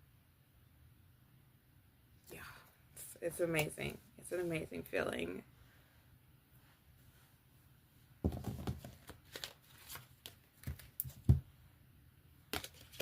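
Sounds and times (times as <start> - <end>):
cards being shuffled: 8.3 - 11.4, 12.5 - 13.0.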